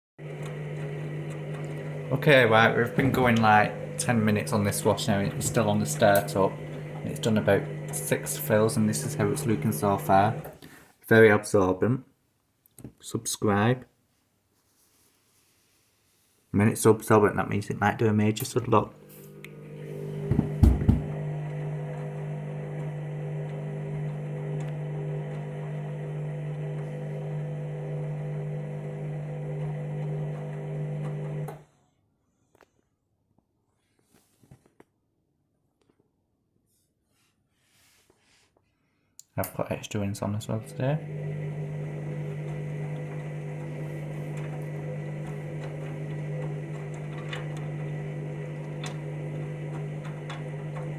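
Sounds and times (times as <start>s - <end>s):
washing machine humming: 0.2s - 10.6s, 18.4s - 31.6s, 40.3s - 50.9s.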